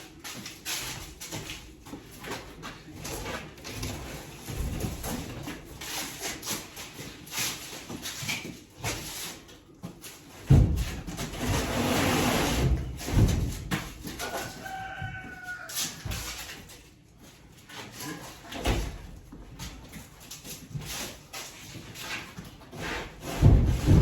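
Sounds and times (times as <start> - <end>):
loud noisy rushing with knocks: 10.5 - 13.8, 23.3 - 24.0
rooster crowing: 14.2 - 16.2.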